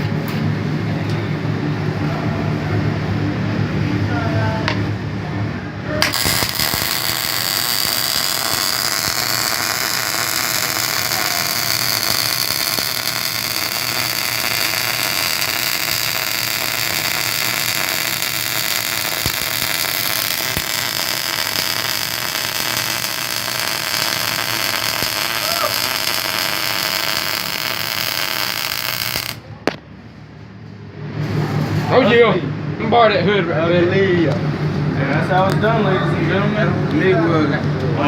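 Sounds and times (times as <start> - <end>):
welding arc crackling hiss: 6.0 - 29.4.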